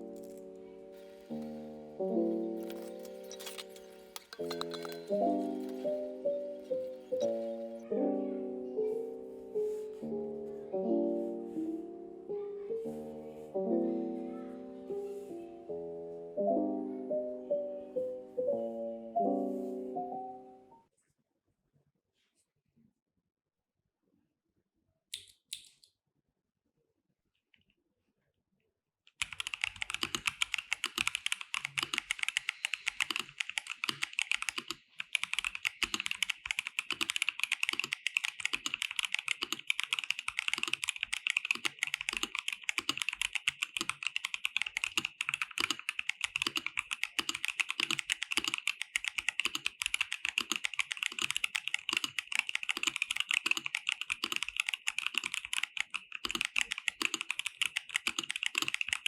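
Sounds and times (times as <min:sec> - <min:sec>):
fast mechanical keyboard typing: 0:00.0 - 0:07.6, 0:29.1 - 0:59.0.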